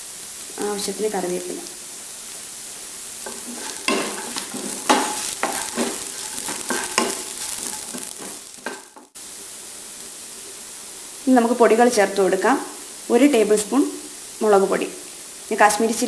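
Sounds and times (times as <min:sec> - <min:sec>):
food sizzling in oil: 0:00.0 - 0:16.0
spoon stirring and scraping pan: 0:03.2 - 0:09.2.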